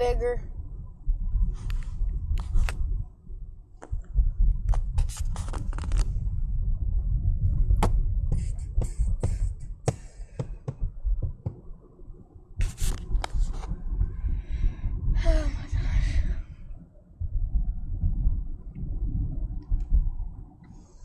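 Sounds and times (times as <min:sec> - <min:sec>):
vehicle driving rumble: 0:00.0 - 0:21.0
sharp clicks and scrapes: 0:01.6 - 0:02.9, 0:04.6 - 0:06.2, 0:12.6 - 0:13.8.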